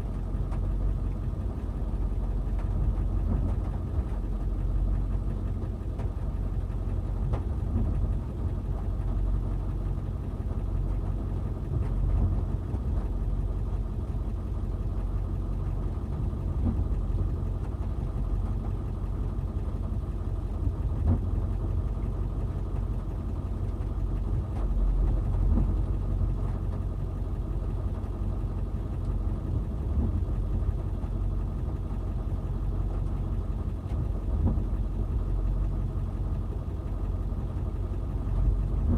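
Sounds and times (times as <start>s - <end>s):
backhoe engine running: 0.0s - 38.9s.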